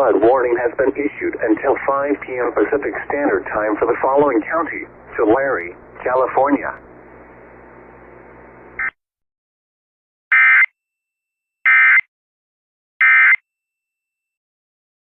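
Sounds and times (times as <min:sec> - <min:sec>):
faint radio hiss: 0:00.0 - 0:08.8.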